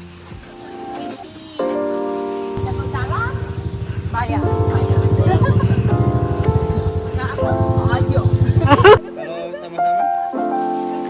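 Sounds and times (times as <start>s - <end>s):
music of sustained chords: 1.9s - 9.0s.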